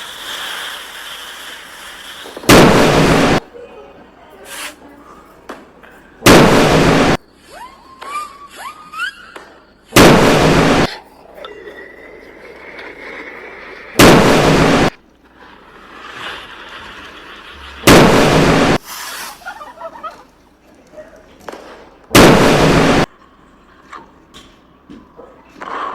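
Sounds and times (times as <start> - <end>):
fireworks: 0.0 - 3.6, 4.4 - 23.2
loud explosion sound effects: 2.4 - 3.4, 6.2 - 7.2, 9.9 - 11.0, 14.0 - 15.0, 17.6 - 18.8, 22.1 - 23.1
rising whistles: 7.2 - 10.0
long thin whistle: 7.4 - 9.7.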